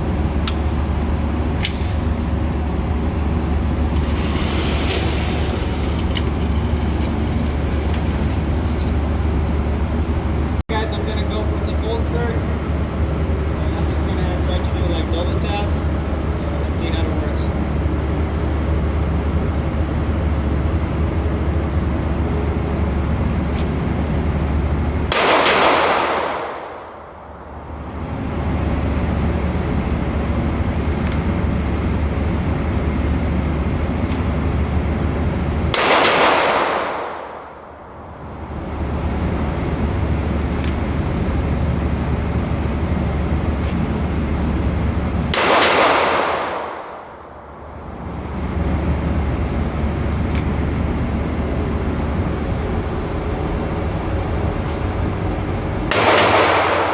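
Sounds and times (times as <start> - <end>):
steady low rumble: 0.0 - 56.9
pistol shots: 25.1 - 27.0, 35.7 - 37.6, 45.3 - 47.3, 55.9 - 56.9.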